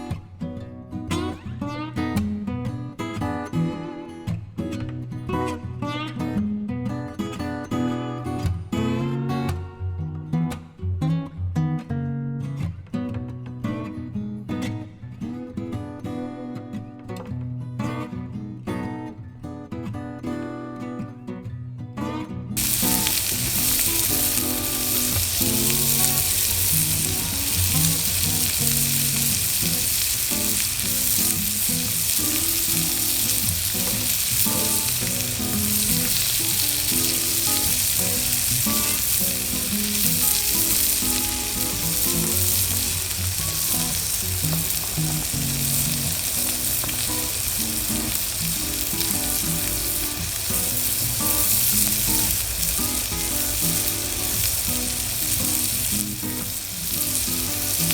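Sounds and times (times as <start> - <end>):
food sizzling on hot plate: 22.6 - 57.9.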